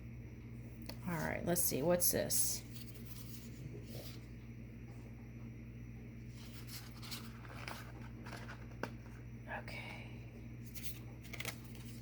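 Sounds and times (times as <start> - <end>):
low steady hum: 0.0 - 12.0
cards rustling and clicking: 6.4 - 9.1, 10.7 - 12.0.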